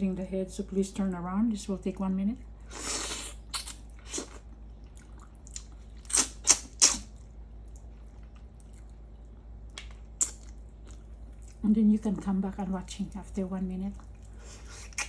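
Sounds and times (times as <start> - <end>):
wet chewing and smacking: 3.4 - 15.0.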